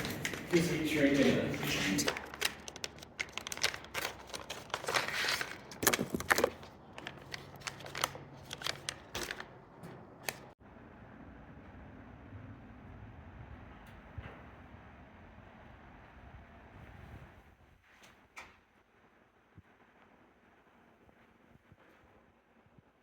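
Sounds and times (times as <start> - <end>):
plastic parts rustling and clicking: 0.0 - 10.6.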